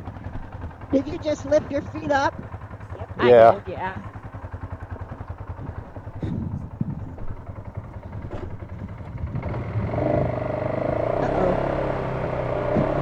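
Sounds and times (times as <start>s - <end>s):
atv engine running: 0.0s - 13.0s
machine knocking over rough trail: 5.1s - 9.4s.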